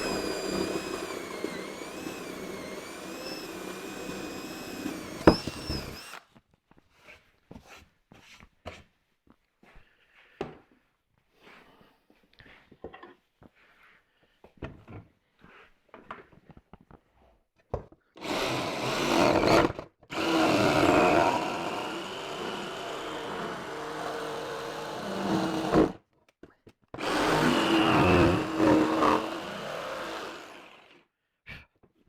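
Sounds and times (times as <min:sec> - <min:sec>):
power tool cutting wood: 0:00.0 - 0:06.2, 0:18.2 - 0:26.0, 0:27.0 - 0:31.0.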